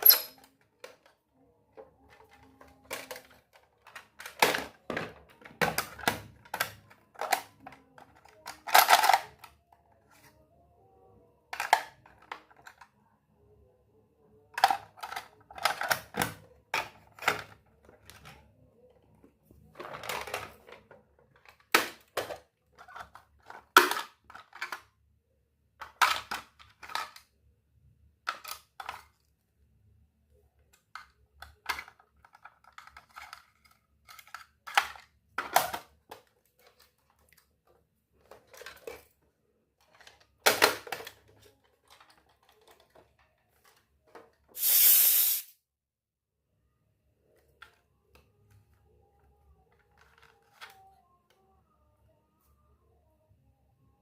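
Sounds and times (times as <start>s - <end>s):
small metal pieces clinking: 0.0s - 0.4s.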